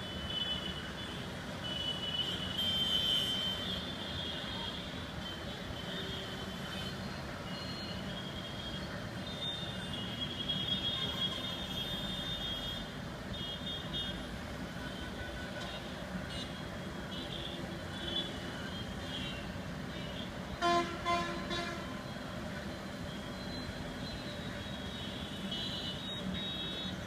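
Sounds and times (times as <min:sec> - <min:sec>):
street traffic: 0:00.0 - 0:27.0
vehicle horn toots: 0:20.6 - 0:21.9.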